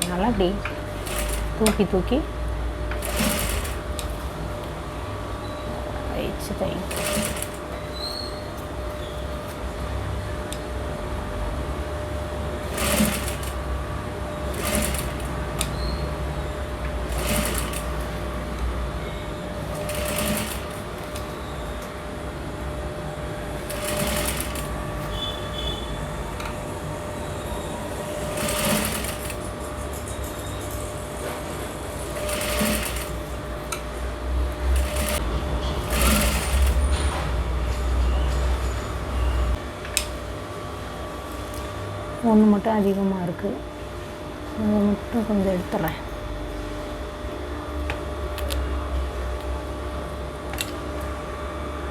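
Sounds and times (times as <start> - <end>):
electric sewing machine stitching: 0.9 - 2.0, 2.9 - 4.2, 6.4 - 8.0, 12.6 - 16.0, 17.0 - 18.4, 19.6 - 21.4, 23.5 - 25.4, 27.4 - 30.0, 31.0 - 33.5, 34.6 - 37.0.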